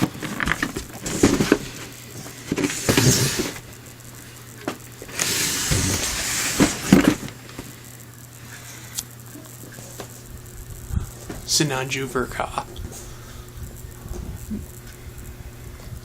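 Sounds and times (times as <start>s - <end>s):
cardboard box rustling and sliding: 0.0s - 3.7s, 5.0s - 7.7s
steady low hum: 0.0s - 16.0s.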